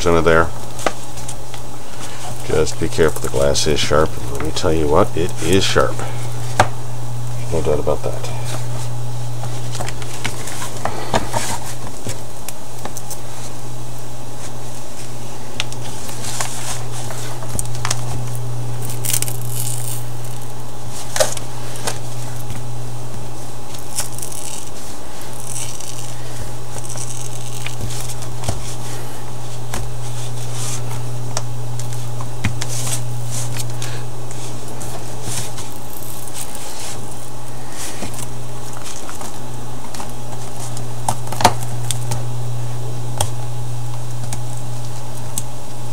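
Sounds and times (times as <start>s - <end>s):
steady low hum: 0.0s - 45.9s
glass cracking and scraping: 18.8s - 20.5s, 23.7s - 28.3s, 35.6s - 37.3s.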